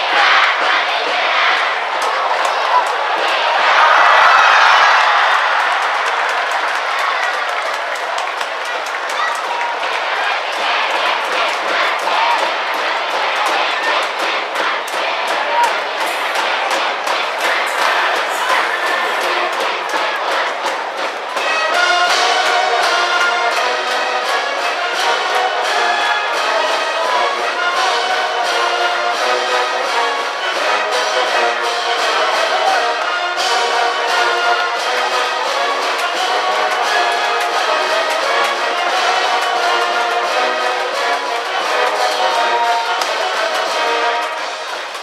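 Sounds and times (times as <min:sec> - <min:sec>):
brass band playing: 0:00.0 - 0:45.0.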